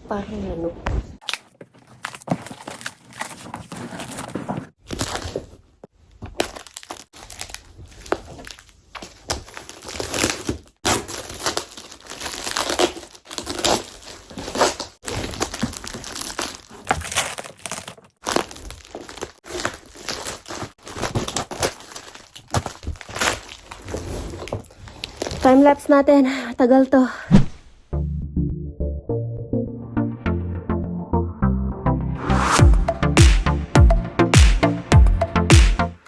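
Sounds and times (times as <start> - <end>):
packaging crinkling and rustling: 1.2 - 26.0.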